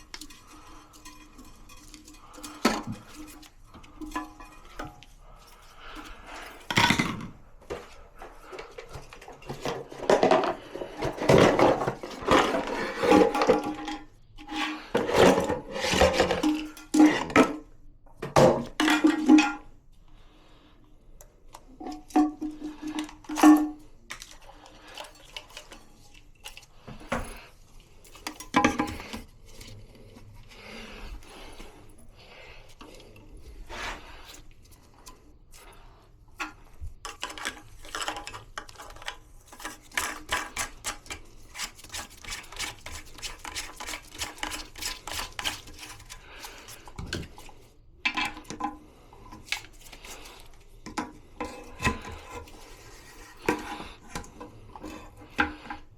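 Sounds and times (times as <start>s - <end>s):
hard parts clattering and knocking: 0.0s - 19.7s, 21.6s - 32.1s.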